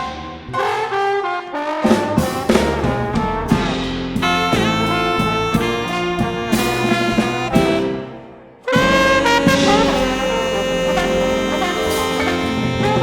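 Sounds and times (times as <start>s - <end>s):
live jazz band playing: 0.0s - 13.0s
trombone: 0.0s - 13.0s
saxophone: 3.0s - 13.0s.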